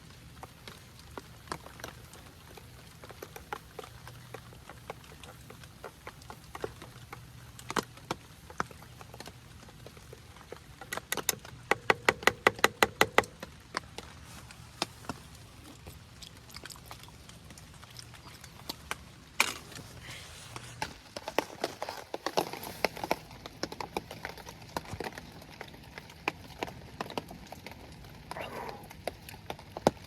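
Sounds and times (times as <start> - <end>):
rain dripping: 0.0 - 20.0.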